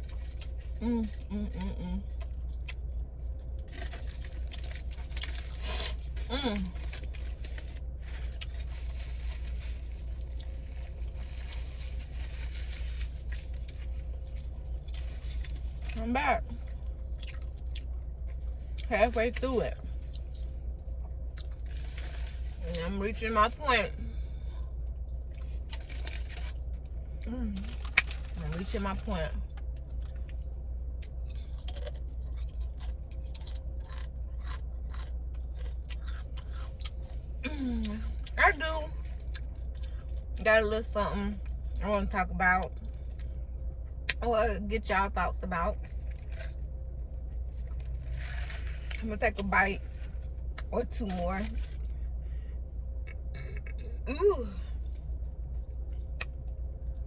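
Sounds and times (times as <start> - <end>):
car rumble from inside cabin: 0.0 - 52.2
steady low hum: 0.0 - 57.0
person chewing: 16.6 - 18.9, 31.0 - 37.2.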